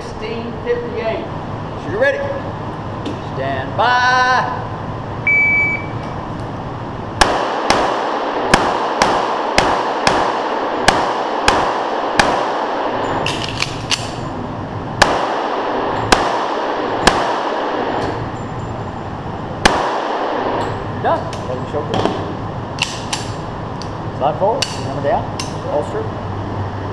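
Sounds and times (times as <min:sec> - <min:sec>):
pistol shots echoing indoors: 0:07.2 - 0:14.3, 0:15.0 - 0:18.3, 0:19.6 - 0:20.8.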